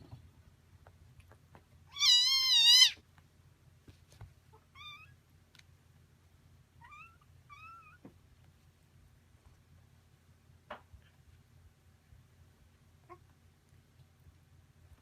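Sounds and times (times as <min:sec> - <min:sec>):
cat meowing: 0:01.9 - 0:03.0, 0:06.8 - 0:08.0.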